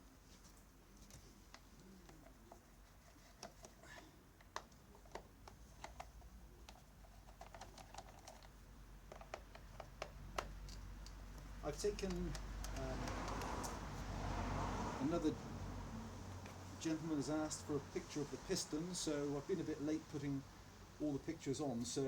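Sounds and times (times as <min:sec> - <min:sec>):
light clicks and taps: 0:00.4 - 0:14.0.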